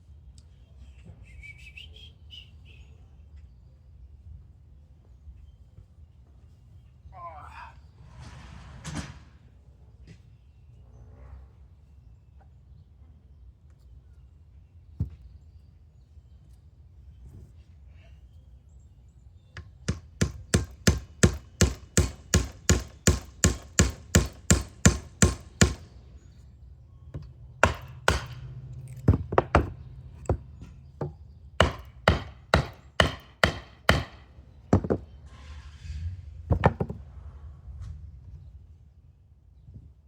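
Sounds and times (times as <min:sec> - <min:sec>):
hammering on wood: 0:19.6 - 0:25.9, 0:27.6 - 0:28.5, 0:29.1 - 0:35.1.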